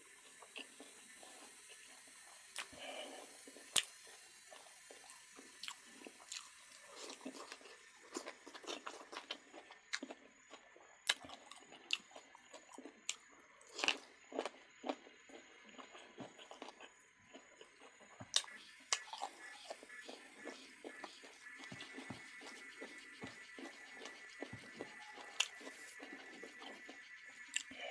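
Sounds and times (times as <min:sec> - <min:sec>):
person biting and chewing: 0:18.3 - 0:27.7.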